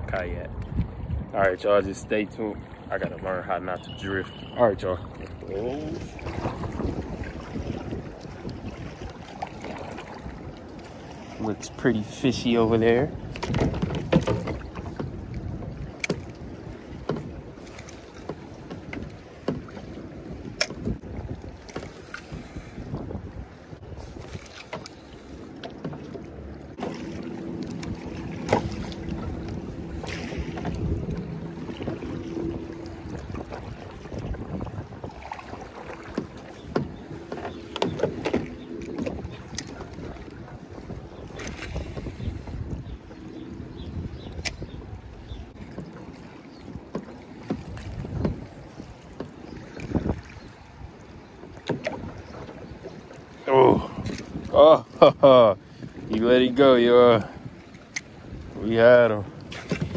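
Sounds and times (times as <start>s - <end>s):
wind rumble on microphone: 0.0s - 26.0s, 26.6s - 59.9s
knocks against kayak hull: 13.3s - 15.2s, 17.0s - 17.4s, 36.0s - 40.0s, 46.9s - 48.4s.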